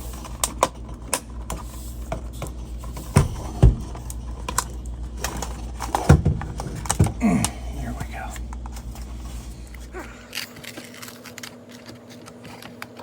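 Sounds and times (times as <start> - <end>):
plastic parts clicking and knocking: 0.2 - 8.9
heavy thumps: 3.0 - 4.1, 5.6 - 10.0.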